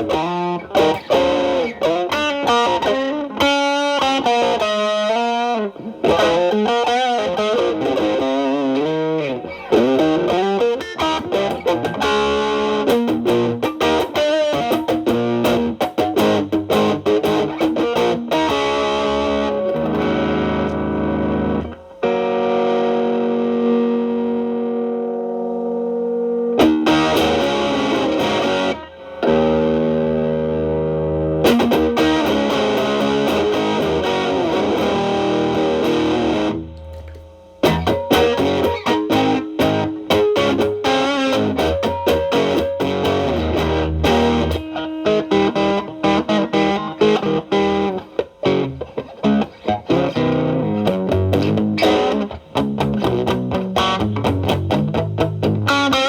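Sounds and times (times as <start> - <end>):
crunchy electric guitar: 0.0 - 56.0.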